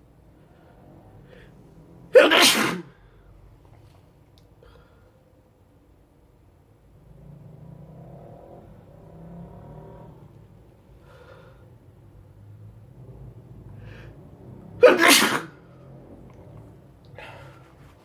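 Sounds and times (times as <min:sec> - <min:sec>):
person sneezing: 0:02.2 - 0:02.9, 0:14.8 - 0:15.6.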